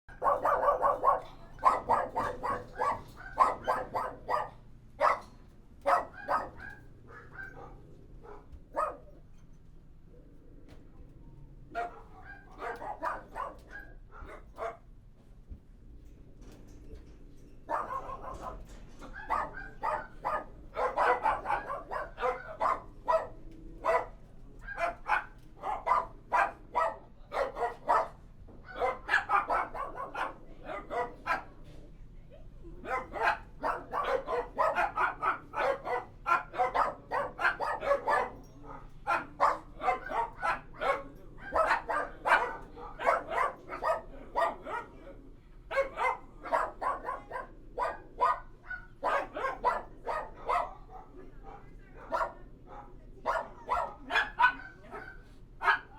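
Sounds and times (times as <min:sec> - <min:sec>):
dogs barking: 0:00.1 - 0:09.3, 0:11.7 - 0:14.9, 0:17.7 - 0:31.6, 0:32.8 - 0:55.9.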